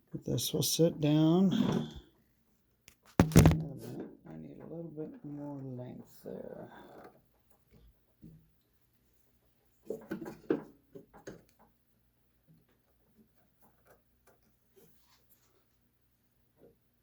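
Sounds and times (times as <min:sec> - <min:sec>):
knocks and scrapes: 0:03.2 - 0:04.1.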